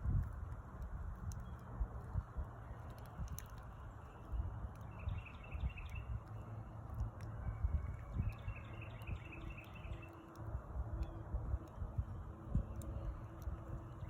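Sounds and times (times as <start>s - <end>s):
wind rumble on microphone: 0.0s - 14.0s
small bird chirping: 2.7s - 6.6s.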